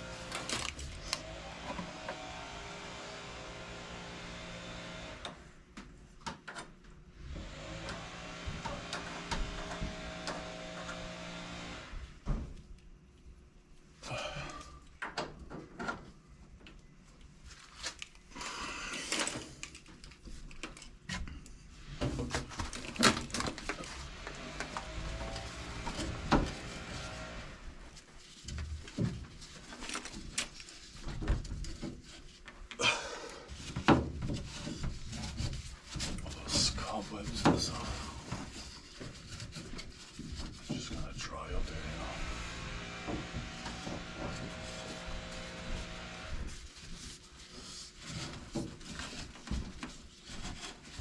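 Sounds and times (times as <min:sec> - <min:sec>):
steady mechanical hum: 0:32.4 - 0:51.0
scraping and rustling: 0:33.5 - 0:51.0.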